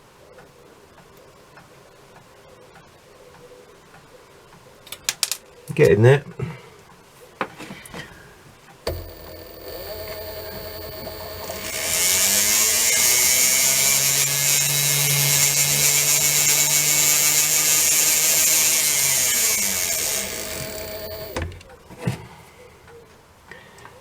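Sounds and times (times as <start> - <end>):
small lathe motor running: 8.9 - 21.6
stone hissing against spinning steel: 9.0 - 21.4.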